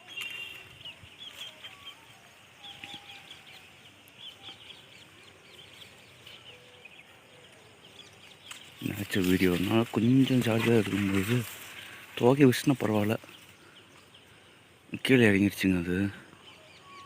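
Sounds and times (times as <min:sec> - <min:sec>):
high bird chirps: 0:00.0 - 0:11.6.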